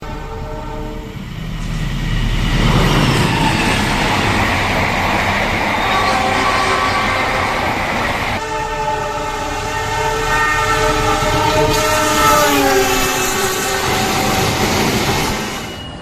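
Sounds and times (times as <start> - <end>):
locomotive horn blast: 0.0 - 1.2, 5.7 - 7.8, 8.4 - 14.6
train running by: 0.0 - 16.0.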